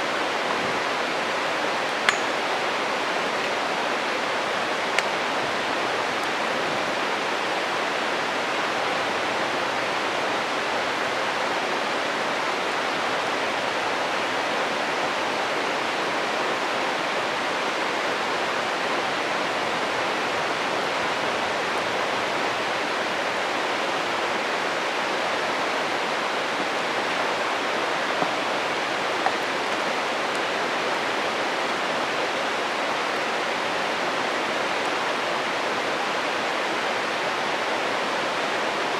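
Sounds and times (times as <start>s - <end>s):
stream rushing: 0.0s - 38.9s
campfire wood snapping: 2.0s - 2.4s.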